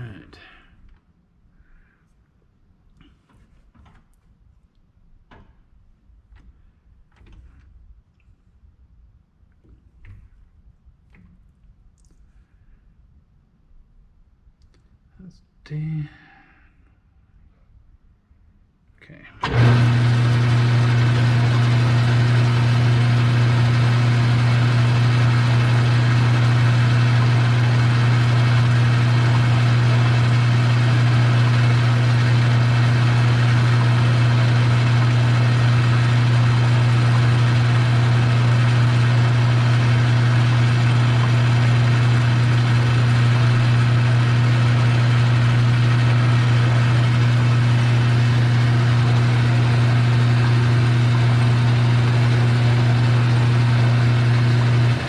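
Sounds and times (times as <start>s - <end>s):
metal lathe running: 19.4s - 55.0s.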